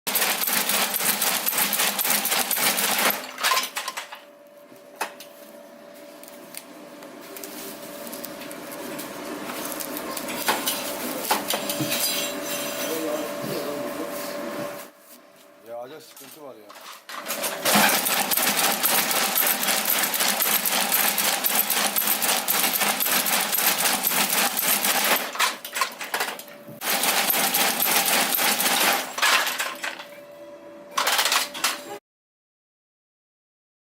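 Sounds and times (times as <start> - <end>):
broom-sewing machine clattering: 0.1 - 4.2, 16.1 - 30.1, 31.0 - 31.8.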